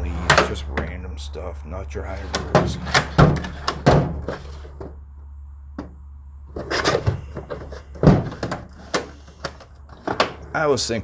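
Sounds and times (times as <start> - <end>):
rattles: 0.0 - 1.0, 2.1 - 5.0, 5.8 - 10.7
tools clattering: 2.2 - 5.0, 6.6 - 10.6.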